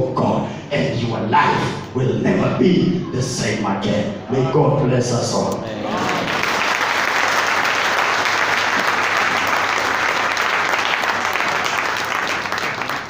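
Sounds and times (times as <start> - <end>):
congregation applauding: 5.8 - 13.0.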